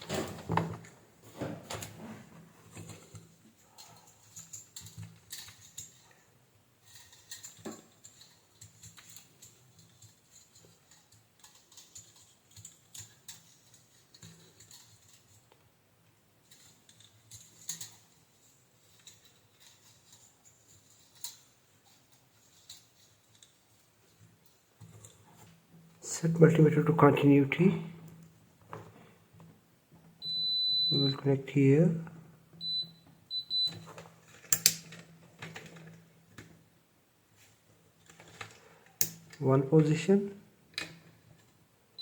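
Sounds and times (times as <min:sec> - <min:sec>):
clicks and taps of small parts: 0:34.4 - 0:35.7.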